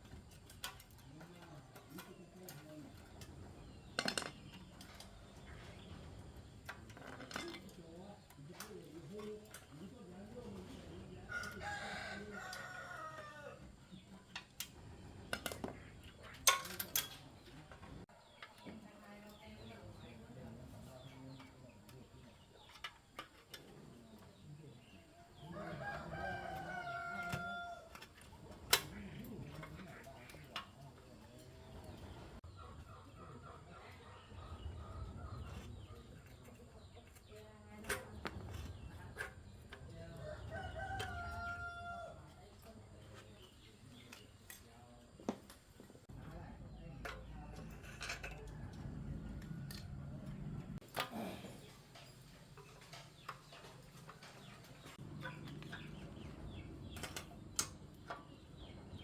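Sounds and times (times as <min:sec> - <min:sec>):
rooster crowing: 0:11.3 - 0:13.6, 0:25.5 - 0:28.0, 0:40.2 - 0:42.3
chickens clucking: 0:17.2 - 0:45.2, 0:48.4 - 0:59.0.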